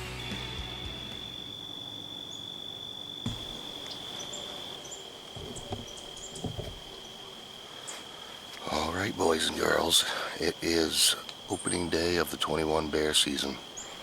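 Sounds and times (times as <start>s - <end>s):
faint high chirps: 0.2s - 7.2s
insect trilling: 0.2s - 14.0s
soft low thumps: 3.3s - 3.7s, 5.4s - 7.0s.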